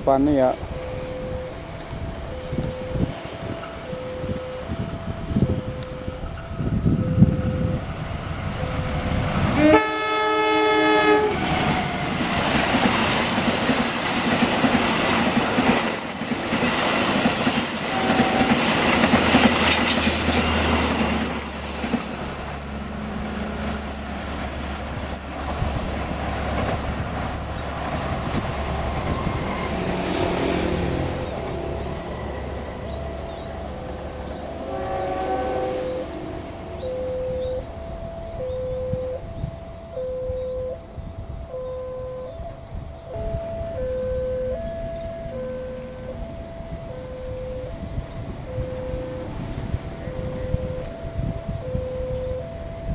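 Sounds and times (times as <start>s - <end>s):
alternating two-note warning tone: 0.5s - 11.5s, 32.2s - 52.9s
train horn blast: 9.4s - 12.2s, 17.8s - 21.1s, 29.1s - 39.3s, 48.0s - 51.3s
train wheels clattering on rails: 11.4s - 34.5s.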